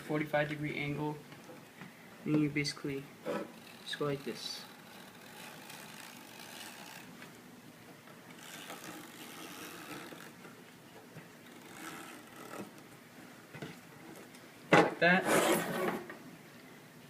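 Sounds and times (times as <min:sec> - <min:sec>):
roller tool grinding and rustling: 0:03.2 - 0:07.3, 0:08.3 - 0:10.6, 0:11.4 - 0:12.9, 0:15.1 - 0:16.2.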